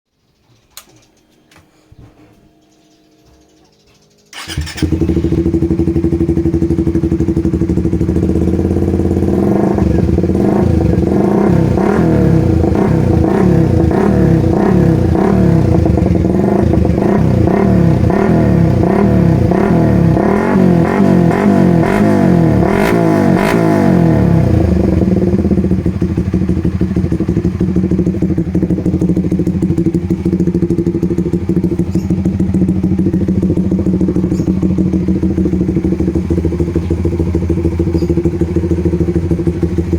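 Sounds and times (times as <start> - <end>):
motorcycle engine idling and revving: 3.1 - 39.9.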